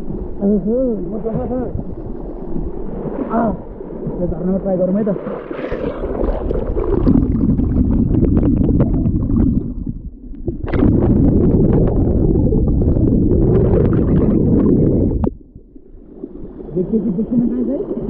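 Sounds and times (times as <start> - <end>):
muffled underwater waterfall churning: 0.0 - 18.0
bubbles crackling: 5.4 - 15.8.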